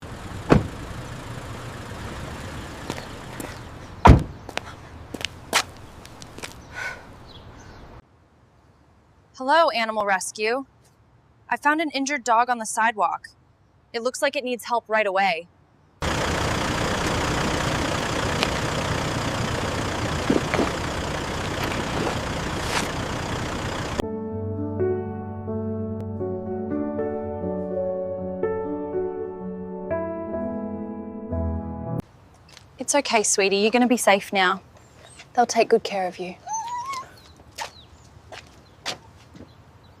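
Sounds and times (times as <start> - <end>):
vehicle engine idling: 0.0 - 8.0, 16.0 - 24.0
street background noise: 0.0 - 24.0, 32.0 - 40.0
soft music: 24.0 - 32.0.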